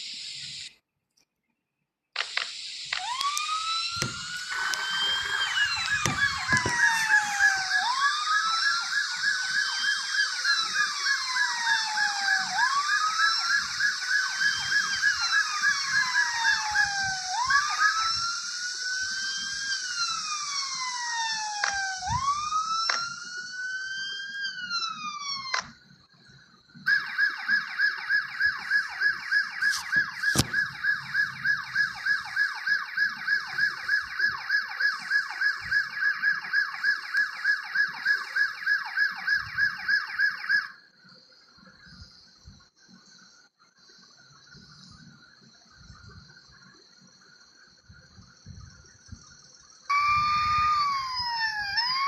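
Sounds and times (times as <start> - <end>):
fast pulsing siren tone: 2.6 - 42.6, 44.3 - 52.0
ambulance siren wailing: 2.9 - 25.7, 26.8 - 40.8, 49.9 - 52.0.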